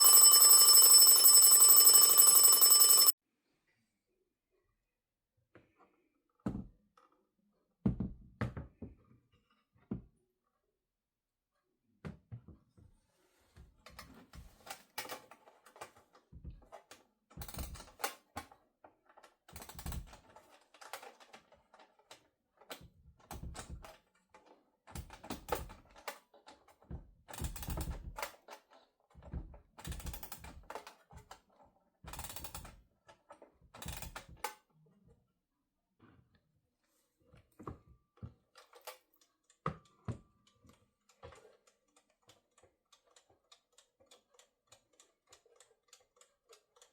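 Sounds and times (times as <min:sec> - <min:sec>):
alarm clock mechanism clicking and rattling: 0:00.0 - 0:03.1.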